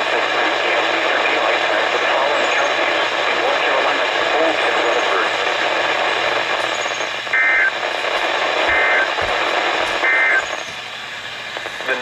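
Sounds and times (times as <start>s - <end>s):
radio static: 0.0s - 12.0s
warbling data bursts: 6.6s - 10.8s.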